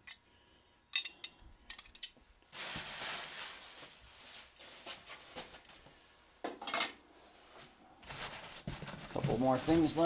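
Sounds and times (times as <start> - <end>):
box contents rustling: 2.5 - 5.9, 7.3 - 10.0.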